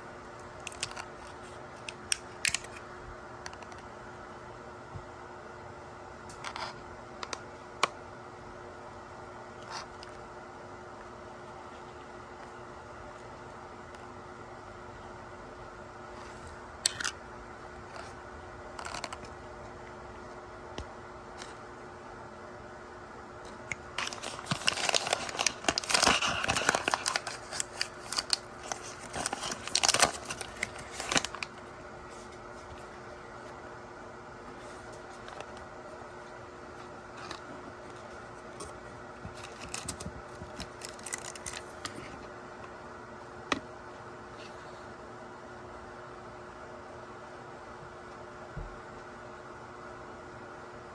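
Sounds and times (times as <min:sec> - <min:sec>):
background hum: 0:00.0 - 0:50.9
plastic packaging clicks: 0:00.6 - 0:01.1, 0:01.8 - 0:02.8, 0:23.7 - 0:31.6, 0:39.3 - 0:41.9
plastic packaging rustling: 0:23.9 - 0:33.1, 0:36.8 - 0:42.1.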